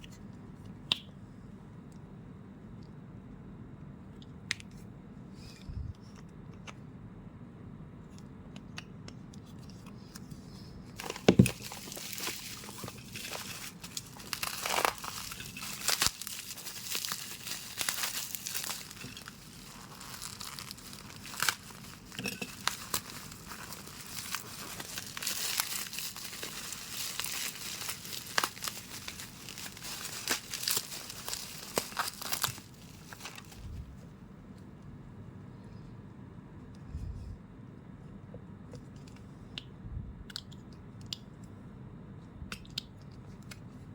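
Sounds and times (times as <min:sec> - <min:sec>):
plastic packaging crinkling: 0:11.0 - 0:33.8.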